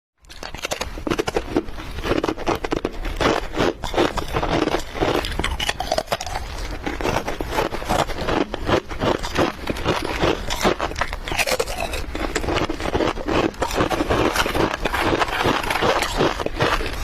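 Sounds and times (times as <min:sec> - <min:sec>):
ice being chewed: 0:00.2 - 0:17.0.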